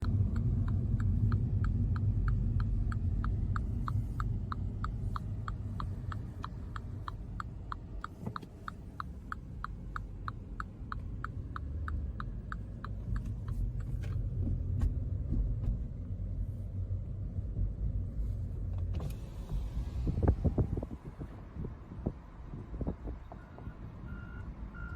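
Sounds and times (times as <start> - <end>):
low engine rumble: 0.0 - 24.9
reversing alarm beeping: 23.4 - 24.9.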